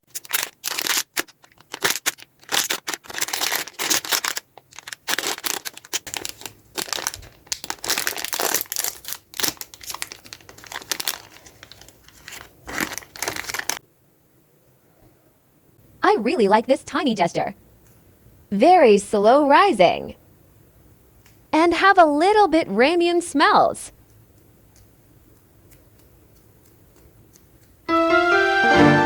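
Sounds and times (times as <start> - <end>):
packaging crinkling and rustling: 0.0 - 13.8.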